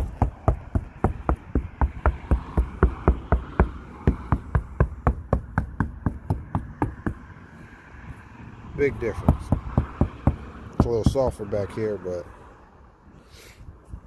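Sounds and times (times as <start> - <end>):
knocking on car roof: 0.0 - 7.3, 9.1 - 11.4.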